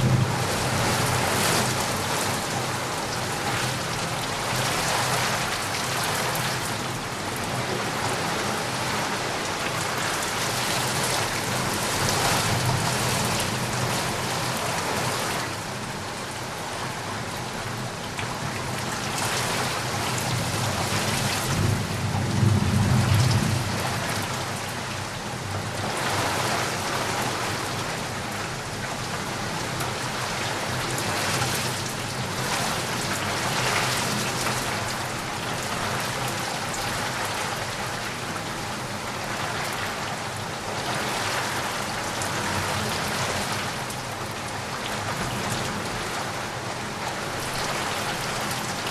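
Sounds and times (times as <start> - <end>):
low thunder rumble: 0.0 - 2.6, 21.4 - 24.6
heavy rain pattering: 0.0 - 48.9.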